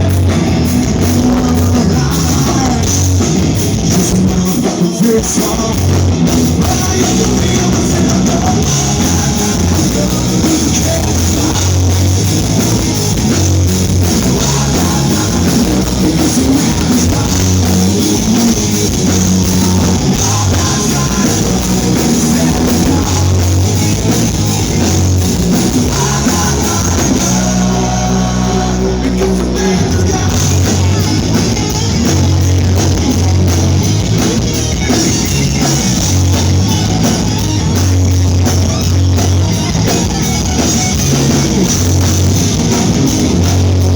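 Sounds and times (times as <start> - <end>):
person singing: 0.0 - 31.9
bass guitar: 0.0 - 43.9
distorted electric guitars: 0.0 - 43.9
drum kit: 0.0 - 43.9.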